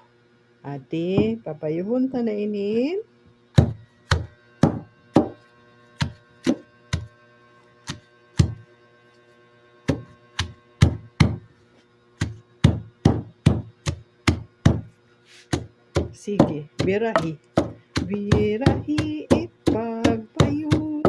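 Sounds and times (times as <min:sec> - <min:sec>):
pestle pounding in mortar: 0:01.2 - 0:01.4, 0:03.5 - 0:05.4, 0:06.0 - 0:07.1, 0:07.9 - 0:08.6, 0:09.9 - 0:11.5, 0:12.2 - 0:21.0.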